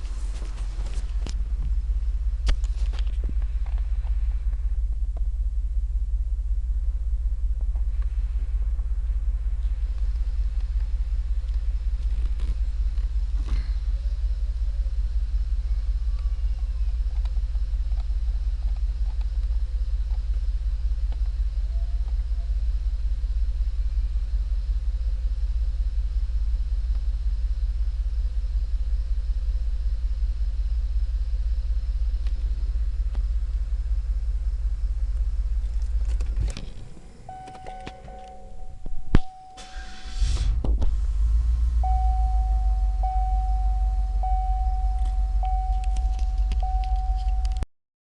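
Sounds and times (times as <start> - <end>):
car engine idling with low rumble: 0.0 - 47.6
steady tone: 36.4 - 47.6.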